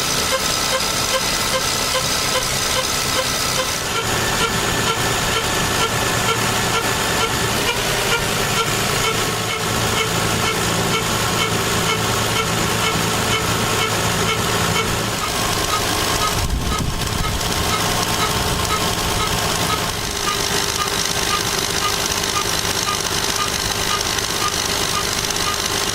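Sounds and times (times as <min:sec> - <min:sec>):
car engine running: 0:00.0 - 0:25.9
repeating engine tick: 0:15.6 - 0:25.9.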